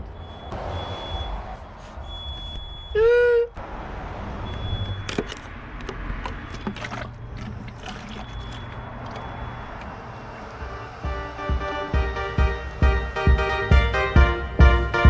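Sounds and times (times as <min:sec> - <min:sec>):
knocks and clicks: 0:10.6 - 0:15.0
music: 0:10.6 - 0:15.0.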